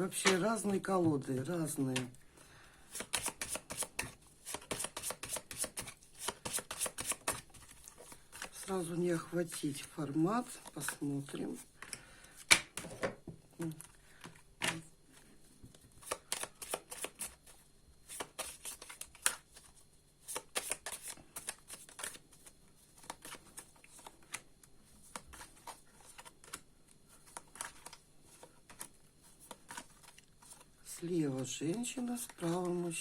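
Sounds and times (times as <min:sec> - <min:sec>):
cards shuffling and slapping: 0:02.9 - 0:08.7, 0:15.8 - 0:30.7.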